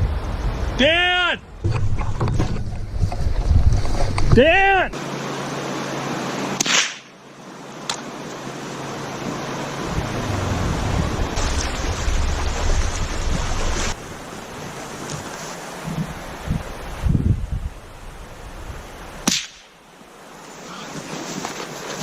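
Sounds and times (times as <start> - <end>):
wind rushing over microphone: 0.0 - 0.9, 1.5 - 4.9, 9.2 - 14.8, 15.7 - 19.2.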